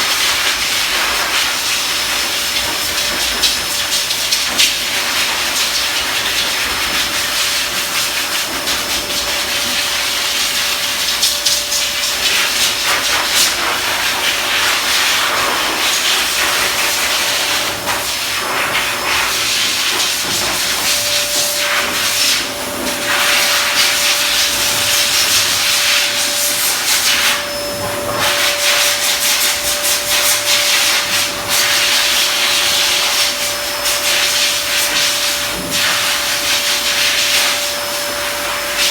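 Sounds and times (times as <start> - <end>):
blow dryer air rush: 0.0 - 38.9
motor whine: 20.0 - 38.9.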